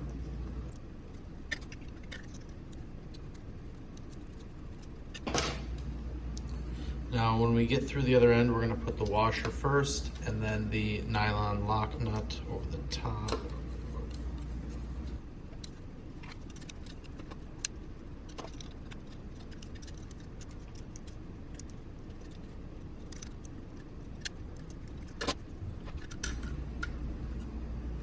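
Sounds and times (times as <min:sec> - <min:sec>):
faint steady background noise: 0:00.0 - 0:28.0
metal hardware clicking and clinking: 0:15.6 - 0:27.0.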